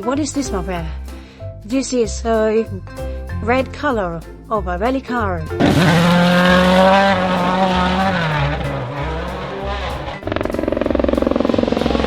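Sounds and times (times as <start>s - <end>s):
music with low beat: 0.0s - 12.0s
rally car engine revving: 5.6s - 12.0s.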